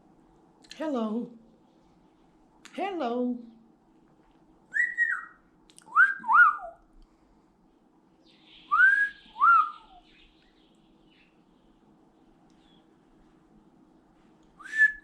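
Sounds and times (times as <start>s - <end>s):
parrot whistling: 4.7s - 5.4s, 8.7s - 10.0s.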